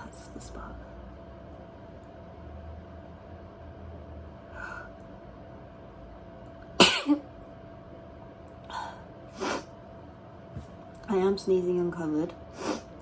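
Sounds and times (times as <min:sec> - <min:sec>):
loud sneeze: 0:06.8 - 0:07.2.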